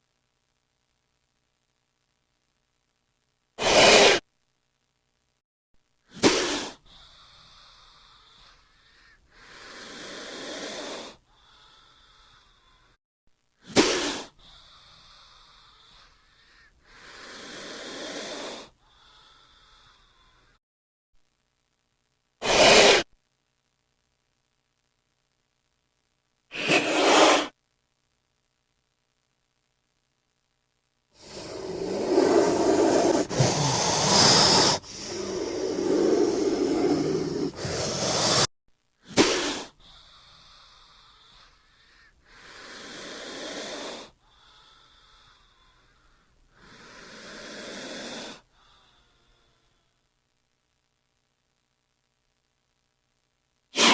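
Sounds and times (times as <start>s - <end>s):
snake hissing: 3.6s - 4.2s, 6.1s - 13.0s, 13.6s - 20.6s, 22.4s - 23.1s, 26.5s - 27.6s, 31.2s - 38.5s, 39.1s - 49.5s.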